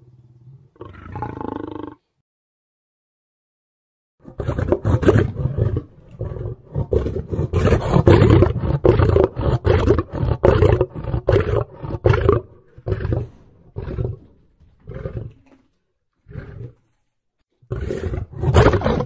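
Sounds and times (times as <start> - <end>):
lion roaring: 0.5 - 2.0, 4.2 - 15.5, 16.2 - 16.8, 17.6 - 19.0.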